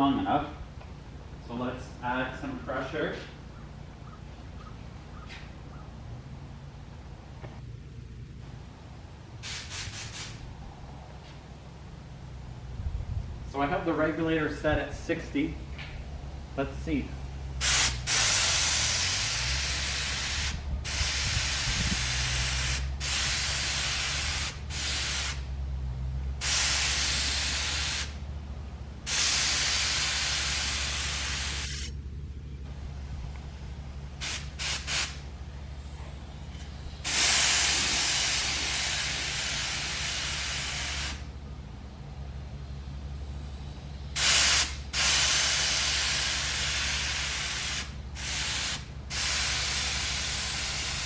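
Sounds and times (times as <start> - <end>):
steady low hum: 0.0 - 51.0
paint spray gun hissing: 9.4 - 10.4, 17.6 - 25.5, 26.4 - 28.2, 29.1 - 32.0, 34.2 - 35.4, 36.8 - 41.3, 44.1 - 51.0.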